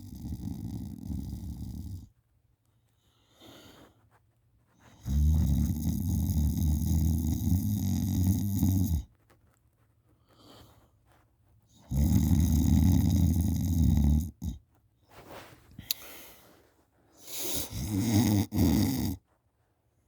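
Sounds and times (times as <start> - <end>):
person snoring: 0.0 - 2.1, 5.1 - 9.0, 11.9 - 14.6, 17.3 - 19.2
soft breath: 2.9 - 4.2, 10.1 - 11.2, 15.1 - 17.9.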